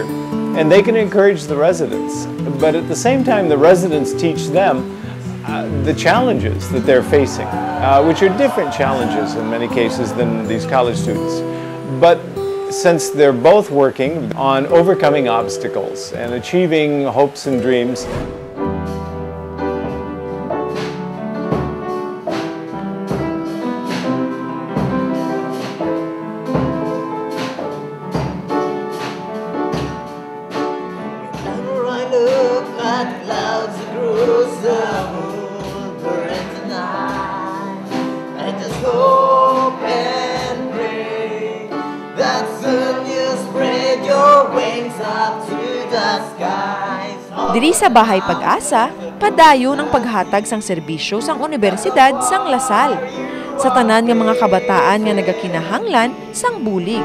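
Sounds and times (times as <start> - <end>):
person singing: 3.1 - 12.1, 31.4 - 57.0
song with steady beat: 5.5 - 10.3, 47.4 - 50.8.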